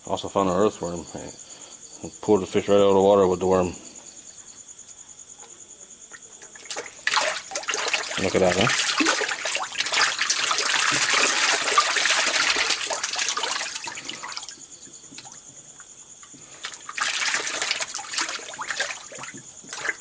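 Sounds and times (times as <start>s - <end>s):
fish thrashing and splashing water: 6.1s - 20.0s.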